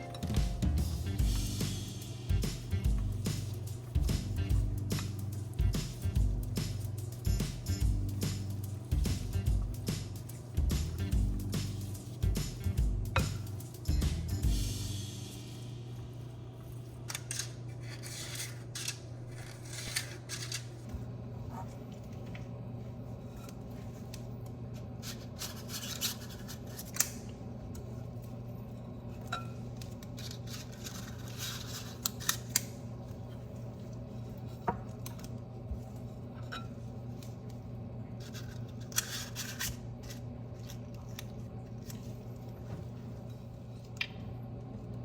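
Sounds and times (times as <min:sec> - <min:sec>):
steady low hum: 0:00.0 - 0:45.0
kitchen tools clicking and scraping: 0:17.0 - 0:20.9, 0:24.8 - 0:27.8, 0:28.7 - 0:33.5, 0:38.2 - 0:42.1.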